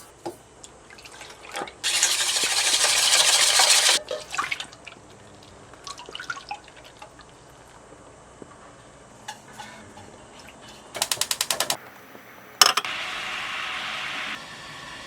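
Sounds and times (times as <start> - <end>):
liquid pouring into a bowl: 1.8 - 7.4
kitchenware clicks and taps: 12.6 - 12.9.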